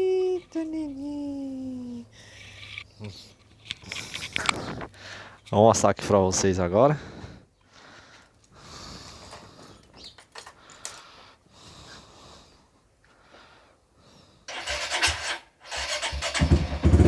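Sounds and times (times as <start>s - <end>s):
shuffling and rustling: 0.0s - 6.2s
motorcycle start attempt: 14.5s - 17.0s.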